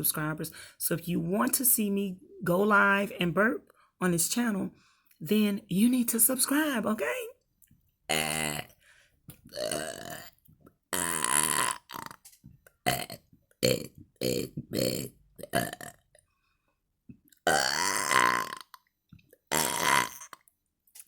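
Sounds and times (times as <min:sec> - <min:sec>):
woman burping: 0:08.1 - 0:08.7, 0:09.5 - 0:10.3, 0:10.9 - 0:12.2, 0:12.9 - 0:16.0, 0:17.4 - 0:18.9, 0:19.5 - 0:20.4.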